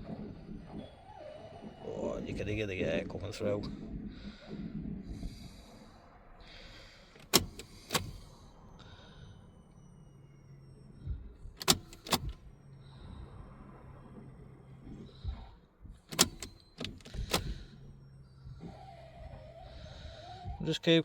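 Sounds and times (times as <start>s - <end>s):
electric fuel pump humming: 0.0s - 21.0s
ignition switch clicks: 6.4s - 8.4s, 11.4s - 20.6s.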